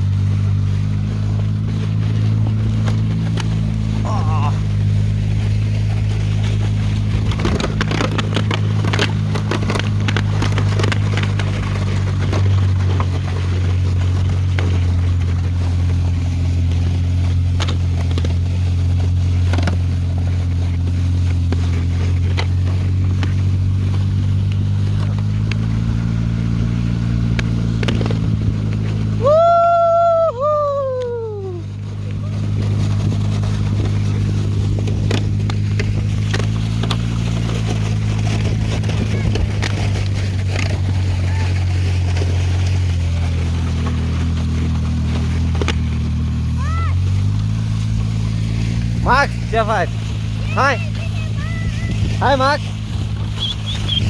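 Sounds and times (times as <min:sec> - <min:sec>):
vehicle engine running: 0:00.0 - 0:54.0
clicks and crackles: 0:05.4 - 0:16.0.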